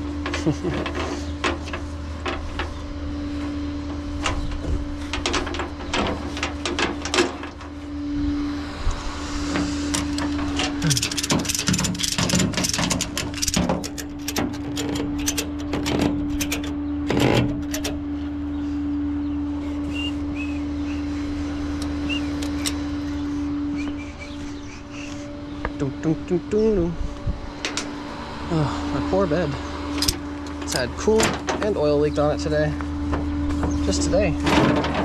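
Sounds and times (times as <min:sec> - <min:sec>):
hand tools clicking and knocking: 0:00.0 - 0:02.7, 0:04.2 - 0:07.7, 0:09.6 - 0:18.0, 0:22.4 - 0:22.8, 0:30.0 - 0:31.7
steady hum: 0:00.0 - 0:35.0.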